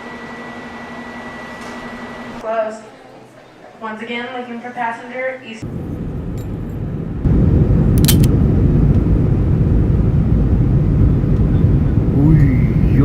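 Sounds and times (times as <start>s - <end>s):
low vehicle rumble: 5.6s - 13.0s.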